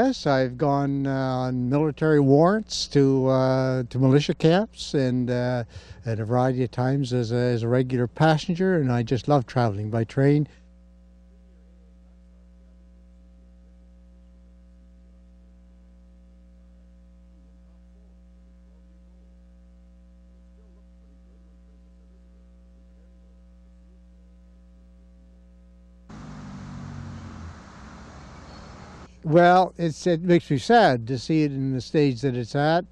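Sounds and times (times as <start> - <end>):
outdoor background noise: 0.0 - 16.2, 25.9 - 32.9
electrical mains hum: 0.0 - 32.9.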